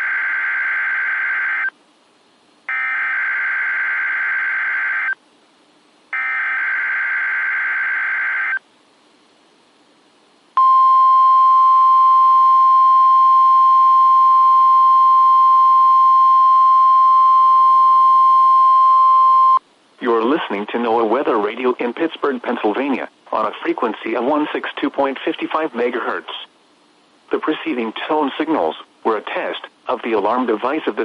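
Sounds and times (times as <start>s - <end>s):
steady warning alarm tone: 2.7s - 5.2s, 6.2s - 8.6s.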